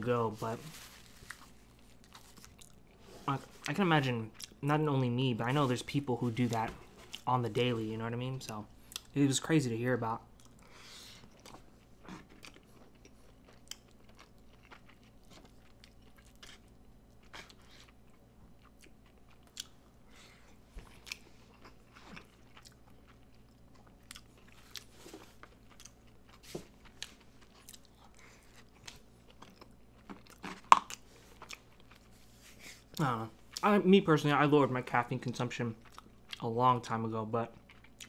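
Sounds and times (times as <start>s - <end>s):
chewing with wet mouth clicks: 4.3s - 4.6s, 11.4s - 19.8s, 20.9s - 32.1s, 35.8s - 36.4s, 37.6s - 38.0s.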